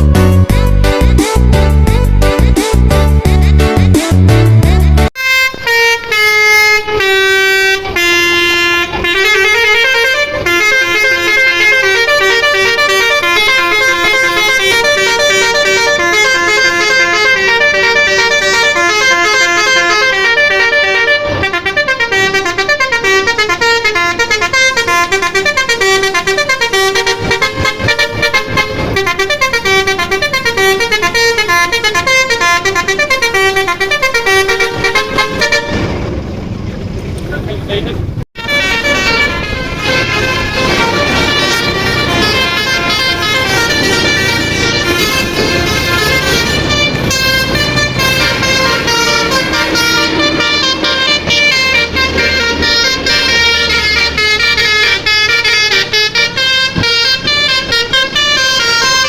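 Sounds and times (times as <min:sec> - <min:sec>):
bus multi-tone horn playing melodies: 0:04.6 - 0:36.2, 0:38.4 - 0:59.0.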